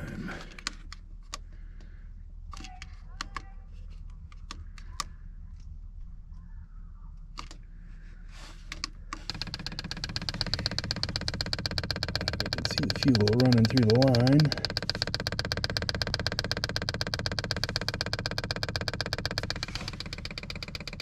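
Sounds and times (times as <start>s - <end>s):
scattered clicks: 8.8s - 21.0s
fuel pump ticking rapidly: 9.2s - 21.0s.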